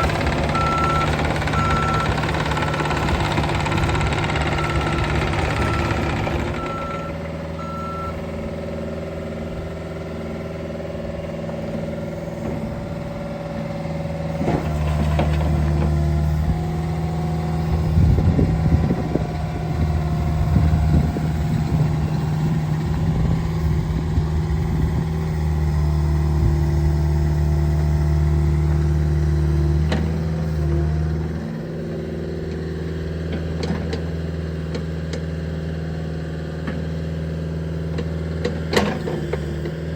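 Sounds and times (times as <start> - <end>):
short beeps: 0.0 - 2.7, 4.5 - 8.2
excavator diesel engine running: 0.0 - 39.9.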